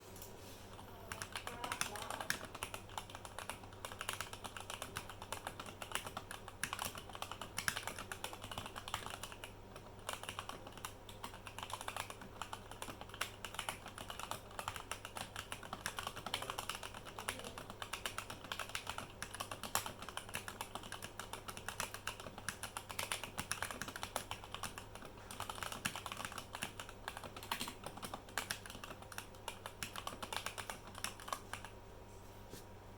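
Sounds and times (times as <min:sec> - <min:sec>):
mechanical keyboard typing: 0:00.7 - 0:31.8.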